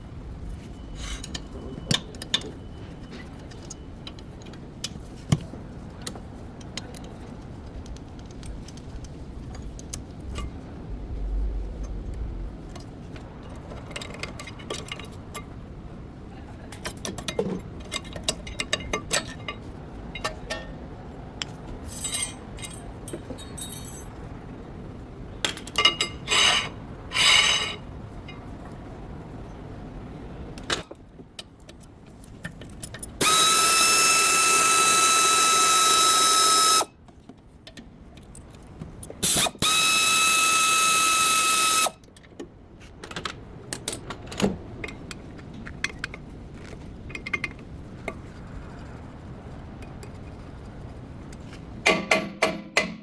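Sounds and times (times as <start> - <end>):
power tool whining: 33.2 - 36.9, 39.2 - 42.0
ratcheting: 33.2 - 36.9.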